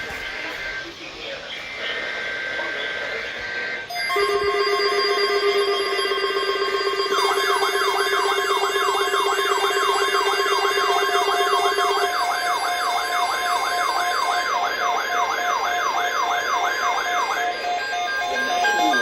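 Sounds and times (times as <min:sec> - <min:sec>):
steady higher alarm tones: 0:03.1 - 0:19.0
low buzzing alarm tone: 0:03.3 - 0:19.0
rapid siren-like yelp: 0:03.9 - 0:19.0.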